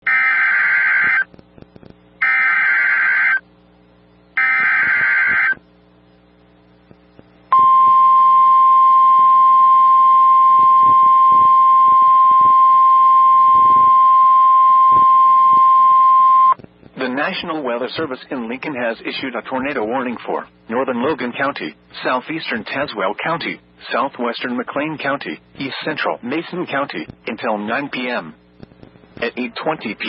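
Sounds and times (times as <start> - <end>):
single-pitch warning alarm tone: 0.0 - 1.3, 2.2 - 3.4, 4.4 - 5.6, 7.5 - 16.6.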